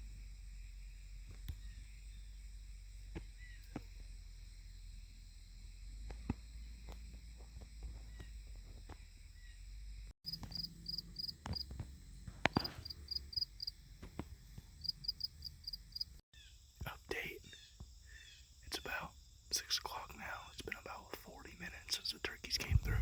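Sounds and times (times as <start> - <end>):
crickets chirping: 0.0 - 23.0
low rumble: 22.6 - 23.0.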